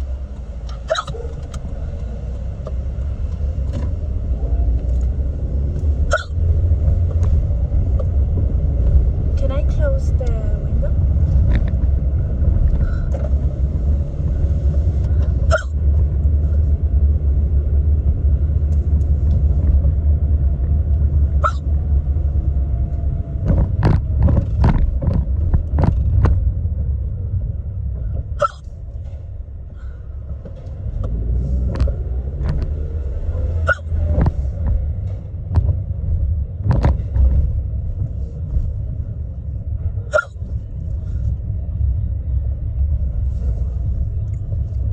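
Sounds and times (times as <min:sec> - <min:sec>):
car road noise rumble: 0:00.0 - 0:44.9
woman hiccupping: 0:00.8 - 0:01.2, 0:06.1 - 0:06.4, 0:15.5 - 0:15.8, 0:28.4 - 0:28.6, 0:40.1 - 0:40.4.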